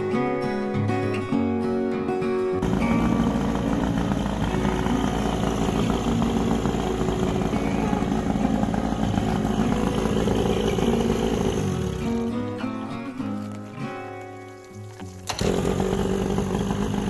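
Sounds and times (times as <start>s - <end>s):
motor running: 2.6s - 12.6s, 15.2s - 17.0s.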